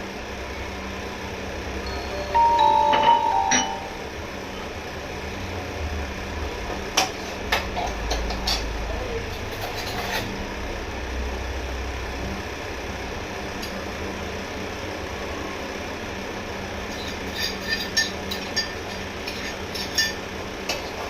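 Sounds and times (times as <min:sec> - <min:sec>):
low mechanical hum: 0:00.0 - 0:21.0.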